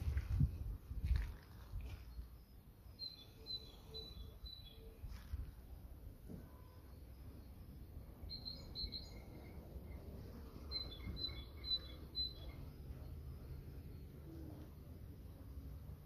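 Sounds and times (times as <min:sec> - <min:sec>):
small bird chirping: 0:01.8 - 0:05.1, 0:06.7 - 0:14.5.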